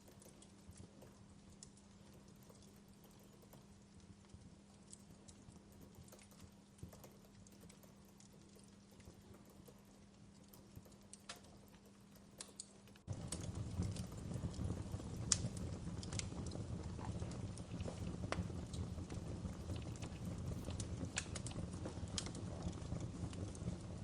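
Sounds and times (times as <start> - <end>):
wood fire crackling and popping: 0.0 - 24.0
low rumble of flames: 12.4 - 24.0.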